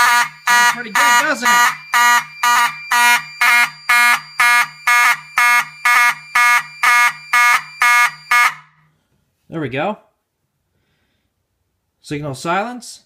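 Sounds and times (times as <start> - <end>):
fire alarm horn blasts: 0.0 - 8.8.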